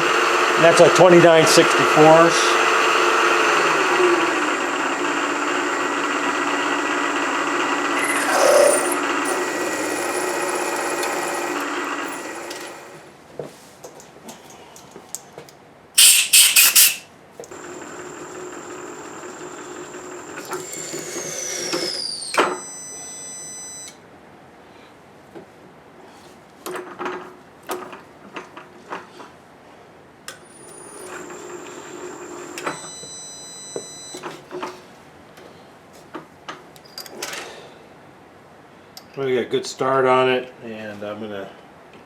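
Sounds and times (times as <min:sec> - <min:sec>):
milling machine spindle whine: 0:00.0 - 0:13.1, 0:17.6 - 0:23.7.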